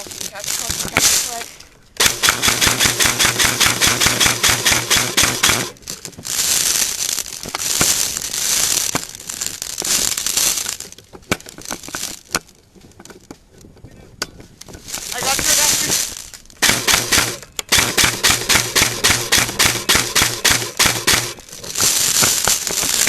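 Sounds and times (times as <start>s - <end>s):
rustling: 0.0s - 23.0s
airsoft gun automatic fire: 2.0s - 5.8s, 16.6s - 21.4s.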